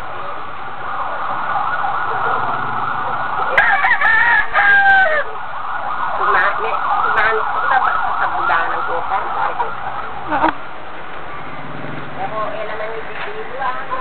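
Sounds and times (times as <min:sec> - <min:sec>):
overlapping voices and calls: 0:00.0 - 0:14.0
rooster crowing: 0:00.9 - 0:09.7.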